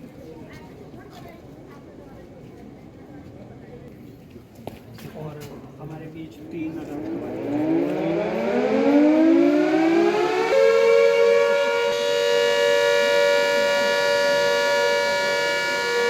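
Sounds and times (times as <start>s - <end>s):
air-raid siren winding up: 7.1s - 16.0s.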